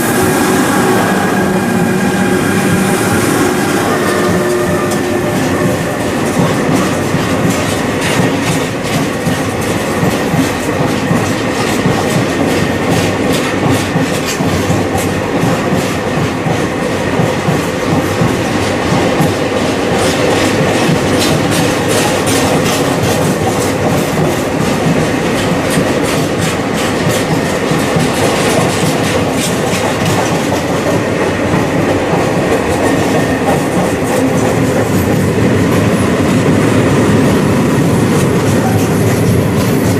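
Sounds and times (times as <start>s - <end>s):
freight train rolling past: 0.0s - 39.9s
wheels clicking over rail joints: 4.4s - 36.6s.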